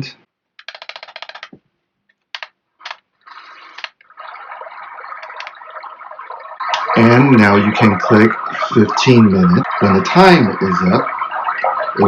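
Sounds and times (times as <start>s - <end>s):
water sound from small speaker: 2.9s - 12.0s.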